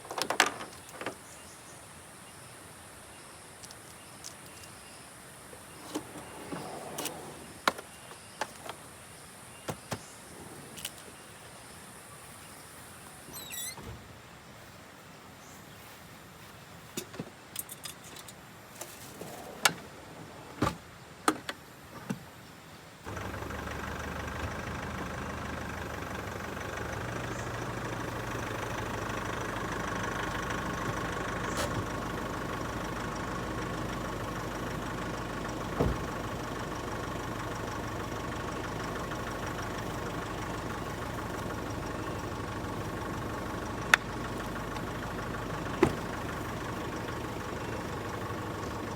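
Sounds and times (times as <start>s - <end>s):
vehicle engine idling: 23.0s - 48.9s.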